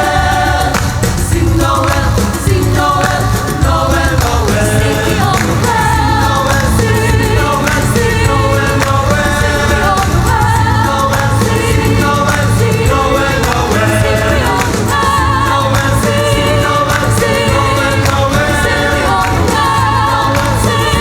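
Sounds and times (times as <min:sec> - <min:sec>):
song with singing over beat: 0:00.0 - 0:21.0.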